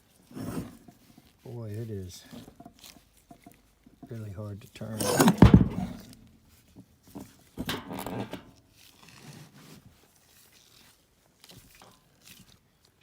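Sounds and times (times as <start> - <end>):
motor shaft creaking: 4.8 - 6.3.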